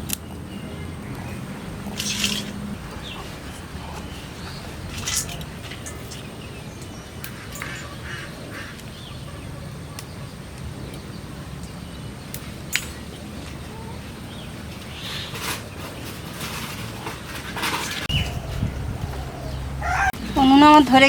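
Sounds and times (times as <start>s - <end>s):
ducks quacking: 7.2s - 9.4s, 19.2s - 20.2s.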